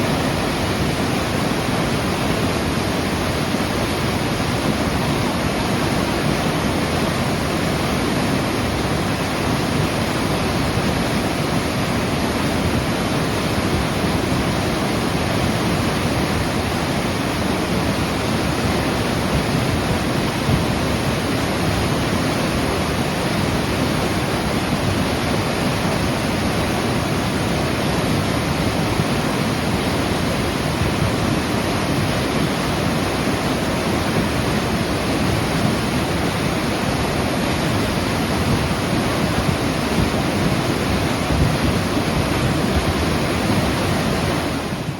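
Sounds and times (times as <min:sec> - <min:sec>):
flooded river rushing: 0:00.0 - 0:44.9.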